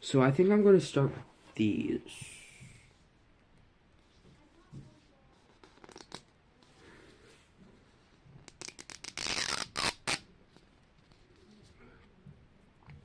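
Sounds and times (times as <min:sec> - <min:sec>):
packaging tearing: 0:08.5 - 0:10.2.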